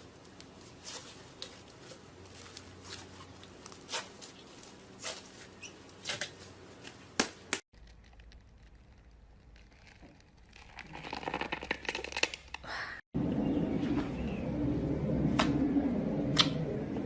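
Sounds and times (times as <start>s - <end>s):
dense slime crackling: 7.1s - 11.6s.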